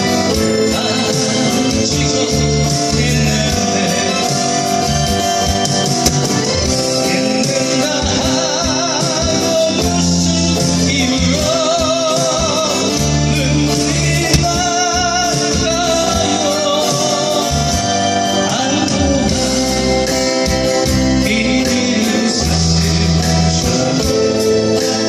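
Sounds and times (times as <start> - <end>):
instrumental accompaniment: 0.0 - 22.2
person singing with vibrato: 6.8 - 19.6.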